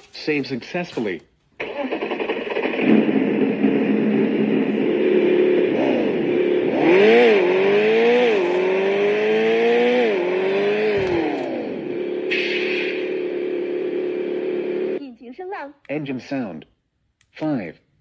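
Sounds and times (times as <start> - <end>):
simulated car engine revving: 1.6 - 15.0.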